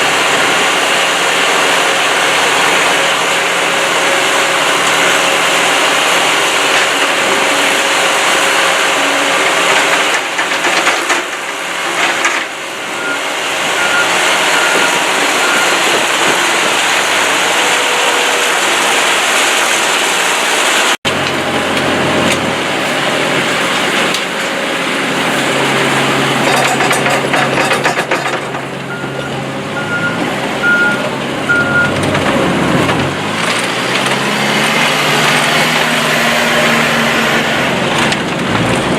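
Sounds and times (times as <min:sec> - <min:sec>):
reversing alarm beeping: 0:12.9 - 0:16.4, 0:28.9 - 0:32.0
screening plant mechanical din: 0:21.1 - 0:29.2.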